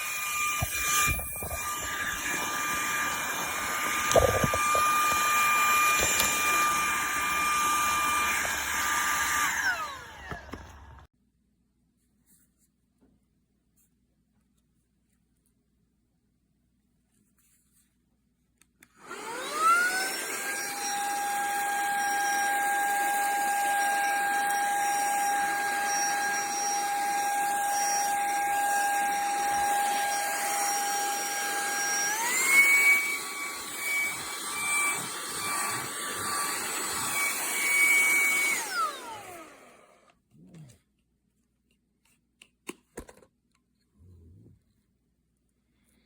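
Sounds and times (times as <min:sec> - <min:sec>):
handheld vacuum motor whining: 0:00.0 - 0:11.1, 0:19.0 - 0:40.2.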